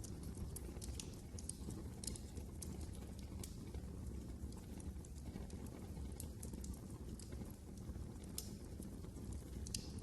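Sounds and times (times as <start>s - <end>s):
fire pops and snaps: 0.0s - 10.0s
low rumble of burning: 0.0s - 10.0s.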